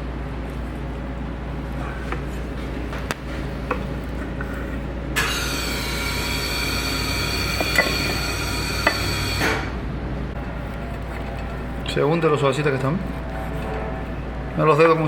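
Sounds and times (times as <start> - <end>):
low steady hum: 0.0 - 15.0
machine whirring with high whine: 3.8 - 15.0.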